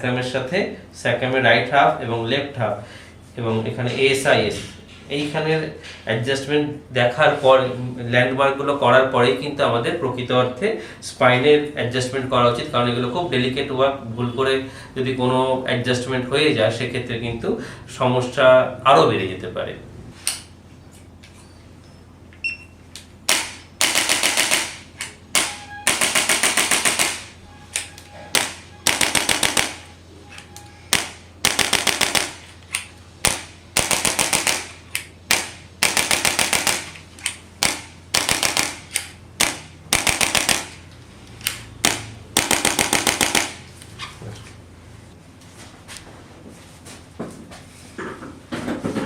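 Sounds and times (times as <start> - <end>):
adjusting instrument rapid clicks: 23.3 - 27.3, 28.4 - 29.8, 30.9 - 40.8, 41.4 - 43.6.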